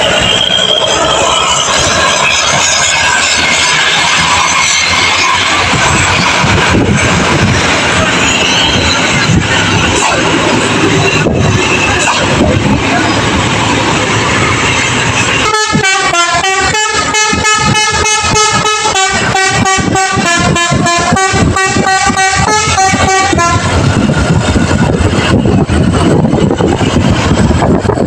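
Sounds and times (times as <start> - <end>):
steady rushing noise: 0.0 - 28.0
multi-tone air horn tune: 15.4 - 23.8.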